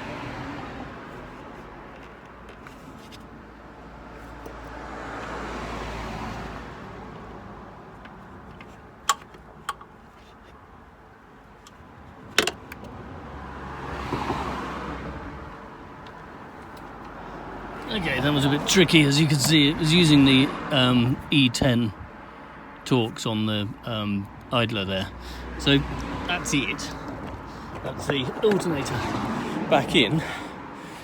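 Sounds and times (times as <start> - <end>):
vehicles passing by: 0.0 - 31.0.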